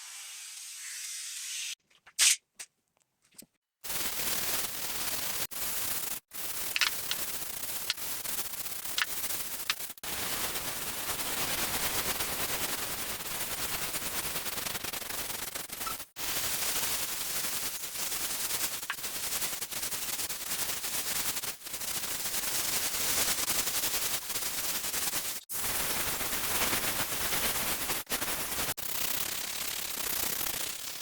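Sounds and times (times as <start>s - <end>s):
scrubbing floor tiles: 6.4s - 9.9s.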